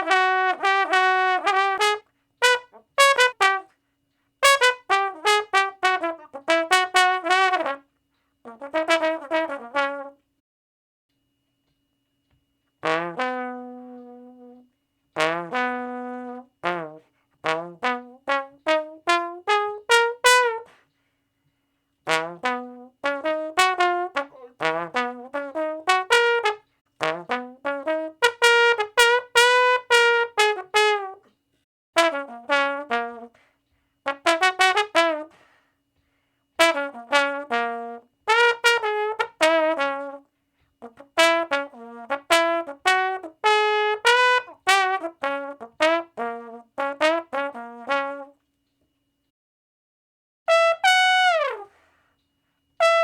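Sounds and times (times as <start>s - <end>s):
brass instrument playing short notes: 0.0s - 3.8s, 4.4s - 7.8s, 8.5s - 10.2s, 12.8s - 20.8s, 22.1s - 31.3s, 36.6s - 48.4s, 50.5s - 51.9s, 52.8s - 53.0s.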